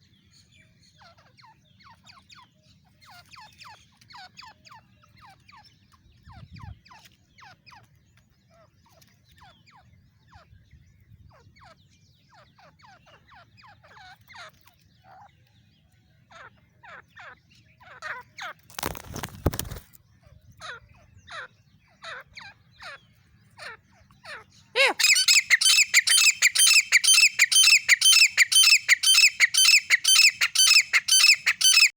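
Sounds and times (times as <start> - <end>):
francolin calling: 24.8 - 31.9.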